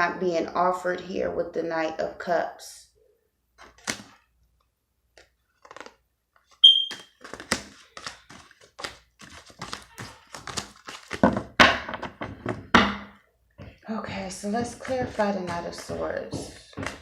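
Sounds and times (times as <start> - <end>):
cards being shuffled: 3.6 - 4.2, 5.2 - 12.4, 14.6 - 17.0
short high electronic beep: 6.6 - 7.0.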